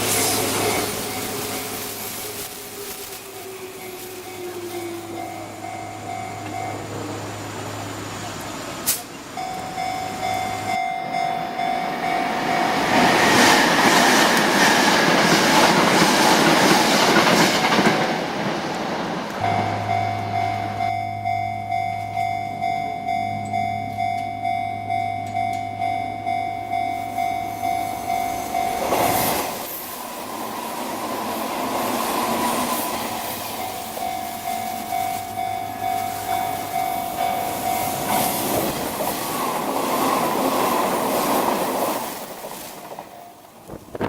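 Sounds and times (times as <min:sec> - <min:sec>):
level crossing warning bell: 0:00.0 - 0:01.9, 0:03.5 - 0:07.2, 0:09.3 - 0:13.1, 0:19.4 - 0:30.2, 0:32.6 - 0:39.4, 0:43.0 - 0:43.6
train wheels clattering: 0:12.9 - 0:19.4.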